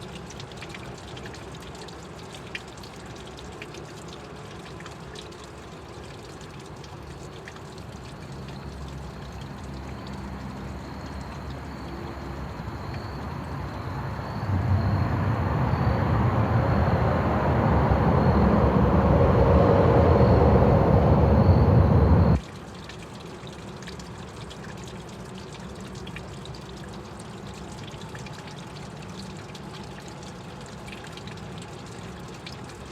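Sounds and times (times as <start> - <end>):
rushing water: 0.0 - 32.9
stream flowing: 6.7 - 23.8
faint trickling: 7.7 - 22.4.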